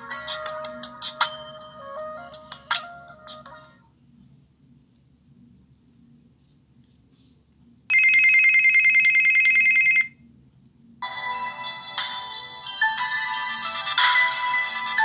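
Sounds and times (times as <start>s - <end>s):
melodic ringtone: 0.0s - 3.8s, 11.0s - 15.0s
electronic trilling phone ring: 7.9s - 10.1s.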